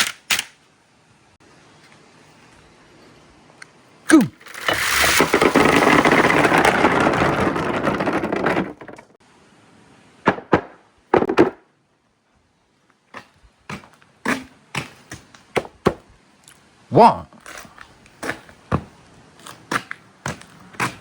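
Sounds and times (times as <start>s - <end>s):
marbles clacking and knocking: 4.4s - 9.2s
marbles rolling down a track: 4.4s - 9.2s.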